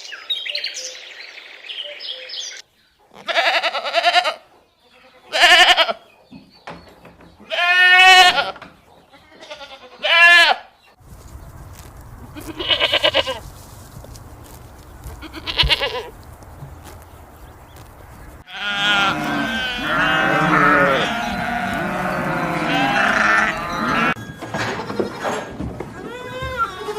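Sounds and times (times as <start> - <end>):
goats or sheep bleating: 3.2 - 6.0, 7.5 - 10.7, 12.4 - 13.4, 15.1 - 16.1, 18.4 - 24.2, 26.0 - 26.9.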